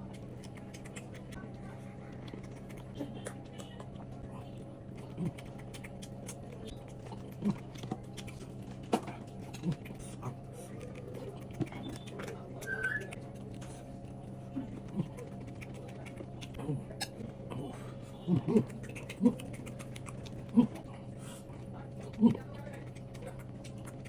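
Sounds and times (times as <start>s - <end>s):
wet mouth clicks while chewing: 0.0s - 4.2s, 4.9s - 24.0s
steady low hum: 0.0s - 24.0s.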